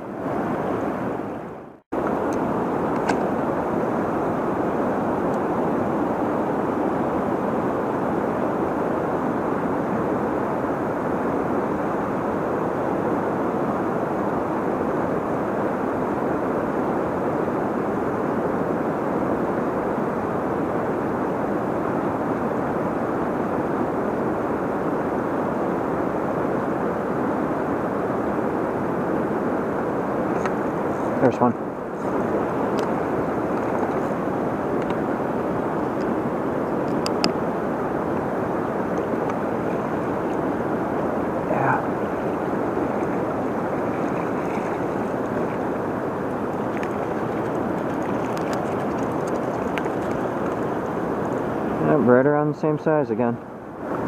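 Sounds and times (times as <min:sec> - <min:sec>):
river water rushing: 0:27.5 - 0:51.9.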